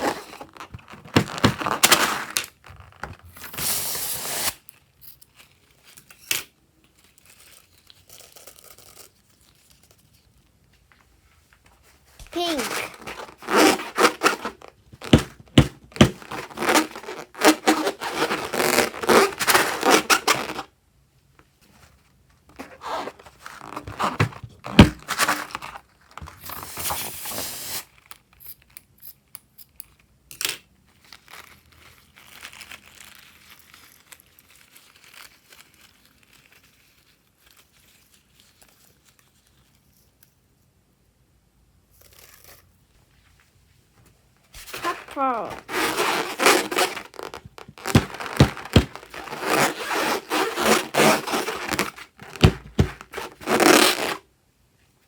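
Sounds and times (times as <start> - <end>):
slime crinkling and tearing: 30.6 - 39.9, 44.7 - 54.2.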